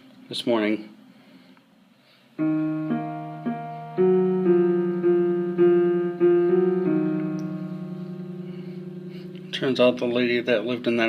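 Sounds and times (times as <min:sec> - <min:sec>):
piano music: 0:02.4 - 0:11.0.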